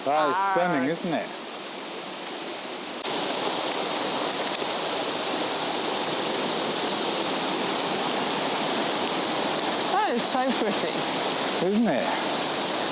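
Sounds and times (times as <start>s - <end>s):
waterfall pouring: 3.0s - 12.9s.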